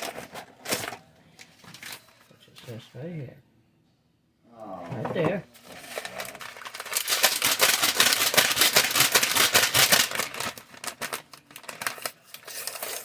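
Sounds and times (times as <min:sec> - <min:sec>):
packet crinkling: 0:05.7 - 0:13.0.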